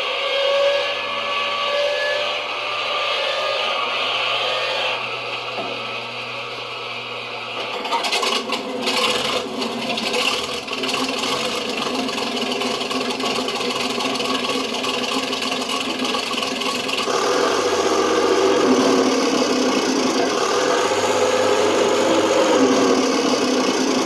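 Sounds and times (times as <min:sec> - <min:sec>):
toy tank engine running: 0:07.6 - 0:24.0.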